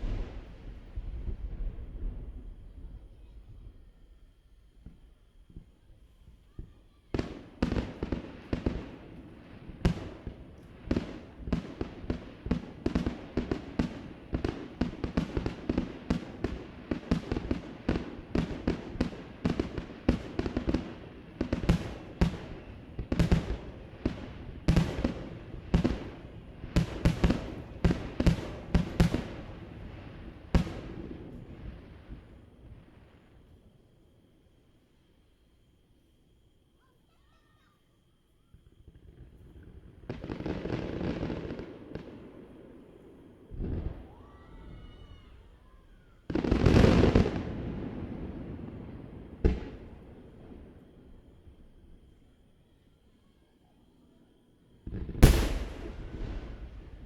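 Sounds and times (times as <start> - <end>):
fireworks booming with echoes: 0.0 - 4.0, 6.5 - 32.4, 54.9 - 57.0.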